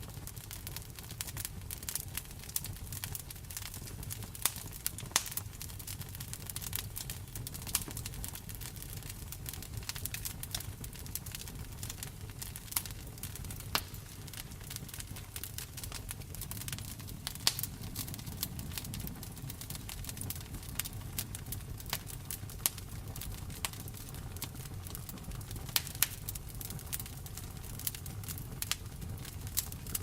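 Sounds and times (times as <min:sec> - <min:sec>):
wood fire crackling: 0:00.0 - 0:30.0
fire popping sharply: 0:09.5 - 0:23.8.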